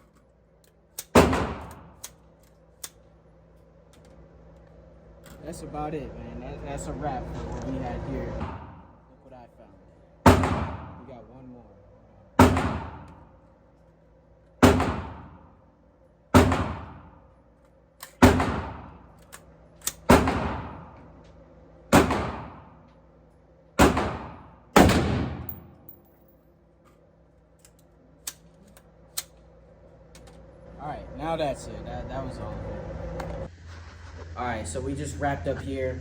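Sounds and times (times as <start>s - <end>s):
echoing gunshots: 1.1s - 2.0s, 10.2s - 11.1s, 12.4s - 13.2s, 14.6s - 15.5s, 16.4s - 17.2s, 18.2s - 19.1s, 20.0s - 21.0s, 21.9s - 22.8s, 23.8s - 25.7s.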